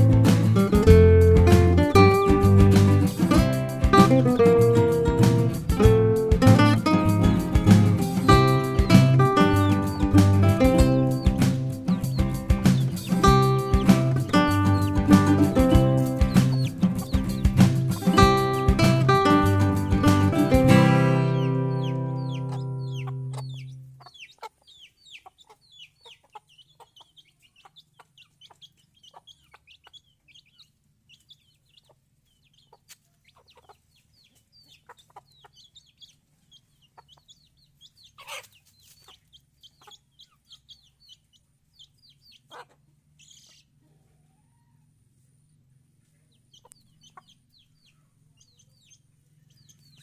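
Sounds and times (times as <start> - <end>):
acoustic guitar chord: 0.0 - 23.9
chickens peeping: 0.0 - 50.0.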